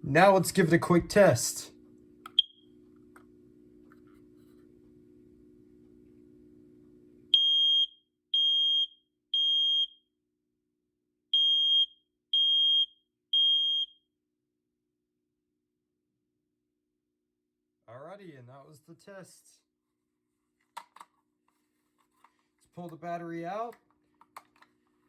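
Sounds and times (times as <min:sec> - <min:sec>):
smoke alarm beeping: 0:02.3 - 0:02.7, 0:07.3 - 0:10.0, 0:11.4 - 0:14.0.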